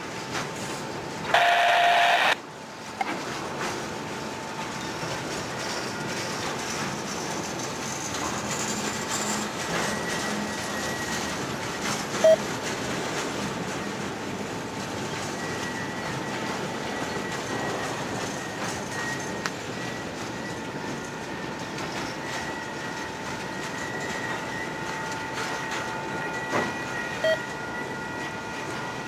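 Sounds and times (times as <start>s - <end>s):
train wheels rumbling on rail: 0.0s - 1.5s, 2.3s - 29.0s
short single-pitched tone: 1.4s - 2.4s.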